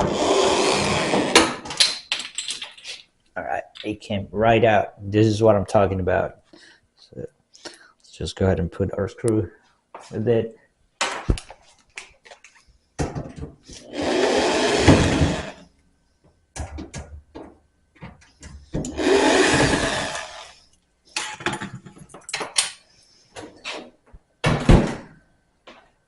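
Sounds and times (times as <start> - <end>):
cordless drill driving a screw: 0.0 - 1.4, 13.8 - 15.6, 18.9 - 20.6.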